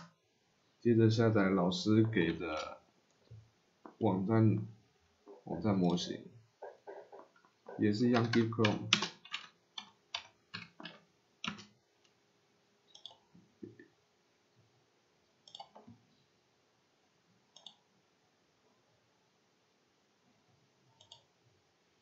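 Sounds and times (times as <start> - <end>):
keyboard and mouse clicking: 6.9 - 11.8, 12.9 - 13.2, 15.4 - 15.9, 17.6 - 17.8, 21.0 - 21.3.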